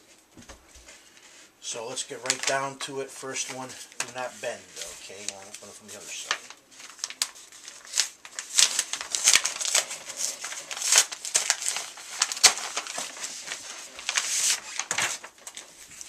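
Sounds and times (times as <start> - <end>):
mailer being torn open: 6.9 - 15.7.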